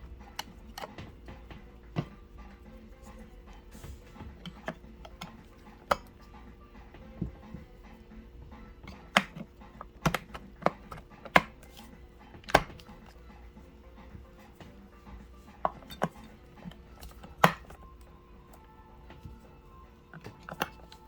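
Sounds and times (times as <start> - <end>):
hard objects clicking and knocking: 3.5 - 6.3, 8.7 - 13.2, 15.6 - 18.0, 20.0 - 21.0.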